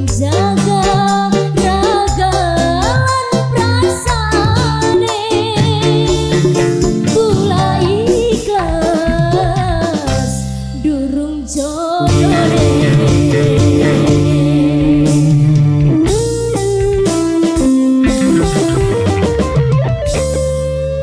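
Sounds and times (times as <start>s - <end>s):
steady drum beat: 0.0s - 10.4s, 12.1s - 20.7s
electric guitar: 0.0s - 10.9s, 11.5s - 21.0s
woman singing: 0.0s - 15.5s
keyboard: 0.0s - 21.0s.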